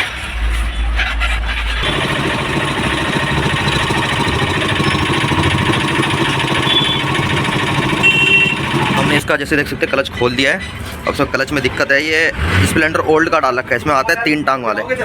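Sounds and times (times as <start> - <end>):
motorcycle engine running: 1.8 - 9.2.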